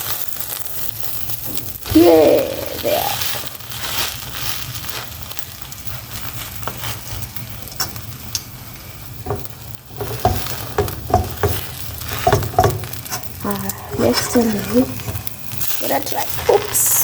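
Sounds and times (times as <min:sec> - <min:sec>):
food sizzling in a pan: 0:00.0 - 0:17.0
utensil scraping and knocking pan: 0:09.2 - 0:15.6.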